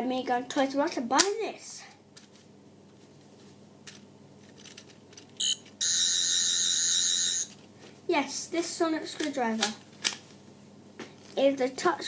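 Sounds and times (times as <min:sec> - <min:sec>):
toy electronic blip: 0:05.4 - 0:07.5.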